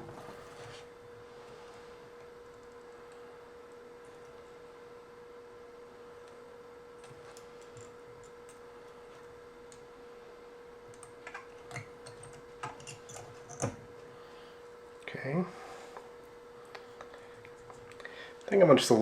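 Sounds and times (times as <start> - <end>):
faint steady hum: 0.0 - 19.0
tools clicking and tapping: 11.0 - 13.8.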